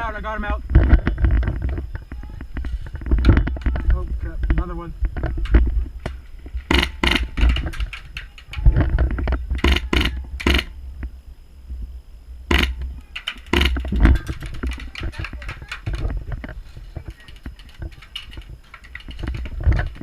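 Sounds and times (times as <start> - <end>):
airsoft rifle shots: 6.1 - 8.8, 9.5 - 10.8, 12.5 - 16.0.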